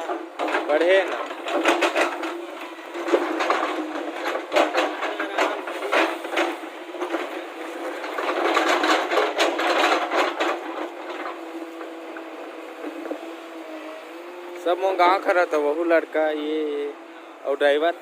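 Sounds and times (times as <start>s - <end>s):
knocking and rattling: 0.0s - 13.3s
engine hum: 0.0s - 18.0s.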